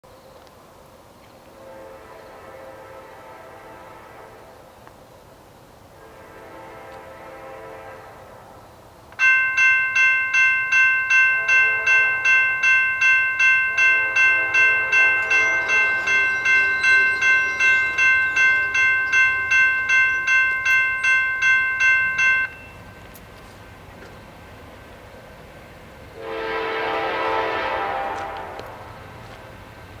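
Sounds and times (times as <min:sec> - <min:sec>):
distant train horn: 0:01.5 - 0:04.8, 0:05.9 - 0:08.6, 0:11.2 - 0:12.4, 0:13.7 - 0:21.1, 0:26.2 - 0:29.4
crossing warning bell ringing: 0:09.2 - 0:23.3.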